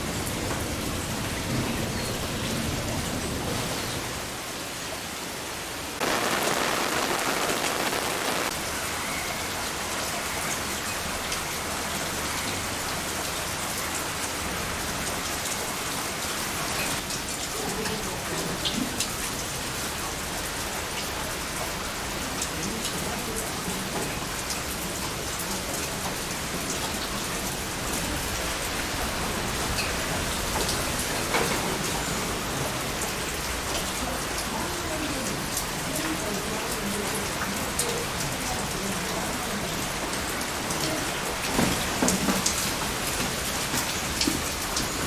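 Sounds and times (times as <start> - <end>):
heavy rain hissing: 6.0 - 8.7.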